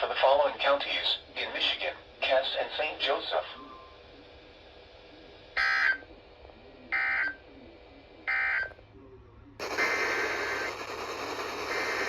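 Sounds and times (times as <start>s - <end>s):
hissy broadcast audio: 0.0s - 12.0s
digital data bursts: 9.6s - 12.0s.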